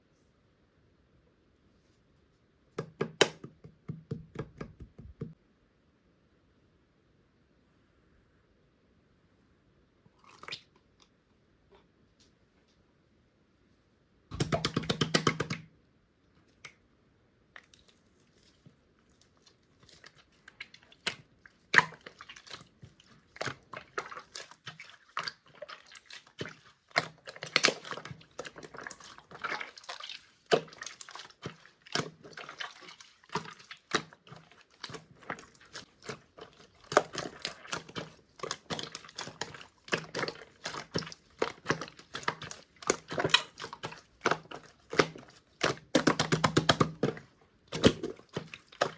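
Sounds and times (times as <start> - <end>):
sticky clicks and wet pops: 14.3 - 15.7, 33.3 - 48.9.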